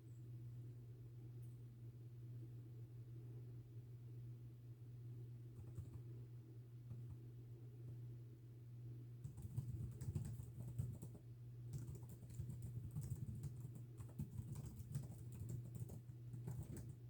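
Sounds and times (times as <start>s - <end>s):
computer keyboard typing: 5.6s - 6.1s, 9.2s - 17.0s.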